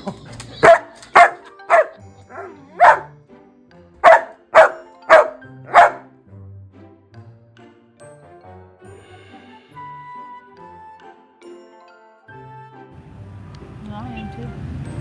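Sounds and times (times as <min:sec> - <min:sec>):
dog barking: 0:00.0 - 0:03.1, 0:04.0 - 0:06.1
light background music: 0:00.0 - 0:15.0.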